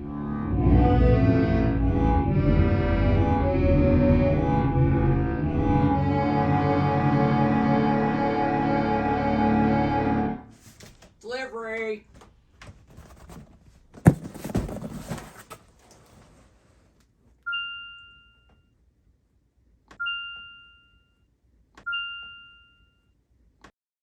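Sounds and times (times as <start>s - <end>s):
rustling: 12.2s - 17.0s
heavy thump: 14.0s - 15.3s
bell-like dings: 17.5s - 18.7s, 20.0s - 21.3s, 21.9s - 23.2s.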